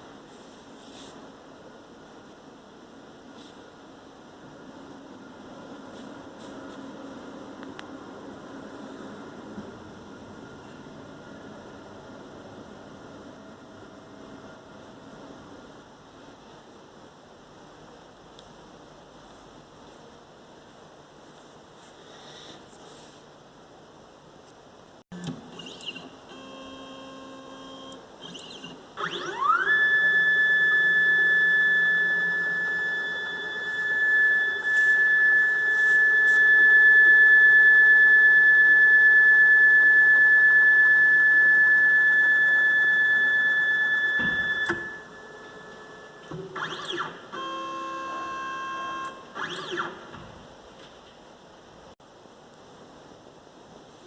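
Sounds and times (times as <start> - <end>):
machine motors whining: 25.2 - 50.3.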